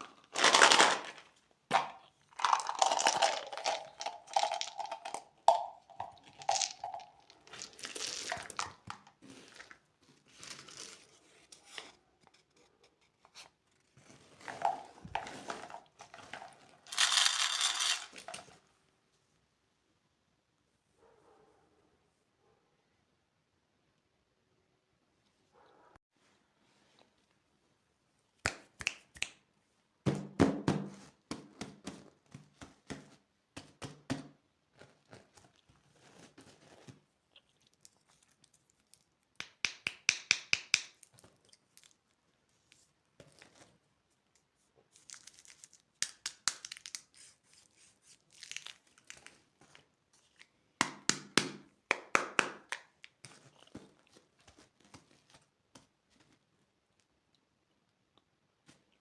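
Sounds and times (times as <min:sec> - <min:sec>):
candy wrapper crinkling: 0:00.0 - 0:11.1, 0:15.4 - 0:18.5, 0:44.9 - 0:50.5.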